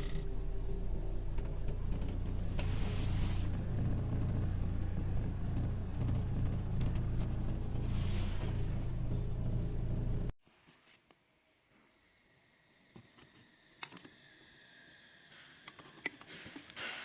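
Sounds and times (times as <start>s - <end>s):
car engine drone inside cabin: 0.0s - 10.4s.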